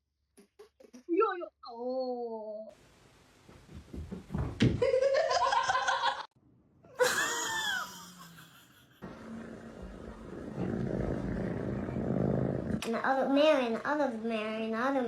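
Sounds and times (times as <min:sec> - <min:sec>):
person laughing hard: 0:06.9 - 0:09.0.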